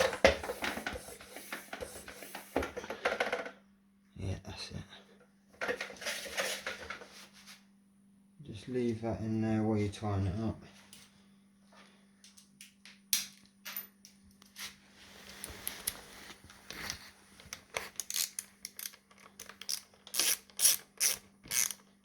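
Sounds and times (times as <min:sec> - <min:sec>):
ratchet clicking: 0:18.0 - 0:21.8.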